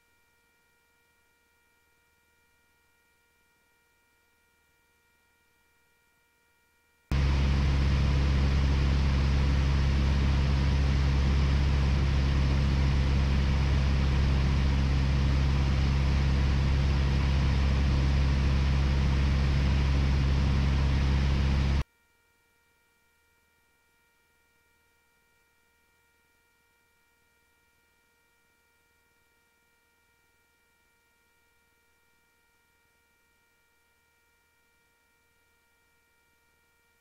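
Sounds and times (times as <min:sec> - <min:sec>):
light aircraft engine and propeller: 0:07.1 - 0:21.8.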